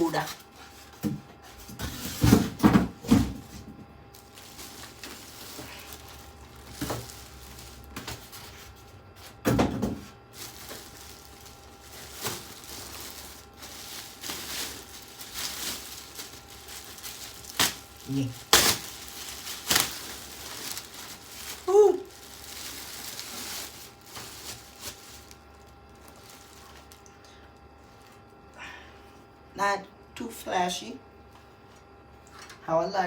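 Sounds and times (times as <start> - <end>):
boxes knocking and clunking: 1.0 - 3.9
packaging rustling: 4.1 - 27.1, 27.8 - 28.2.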